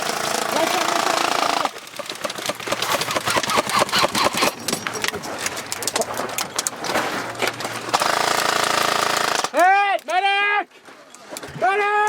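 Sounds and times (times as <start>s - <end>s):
airsoft guns firing: 0.0s - 4.4s, 7.9s - 9.6s.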